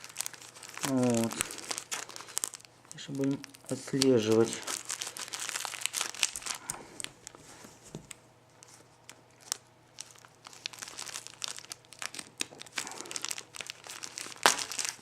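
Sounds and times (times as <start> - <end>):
plastic package crinkling and tearing: 0.0 - 15.0.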